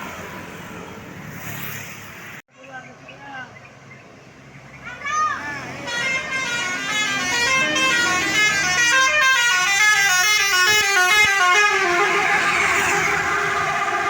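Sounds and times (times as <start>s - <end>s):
bus multi-tone horn tune: 5.8s - 14.0s.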